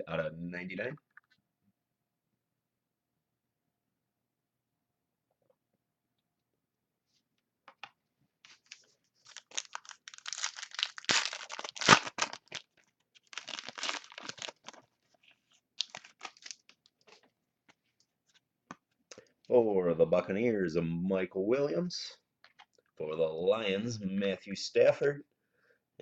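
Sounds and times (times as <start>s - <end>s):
wrapper crinkling and tearing: 8.5s - 15.2s, 15.8s - 17.2s.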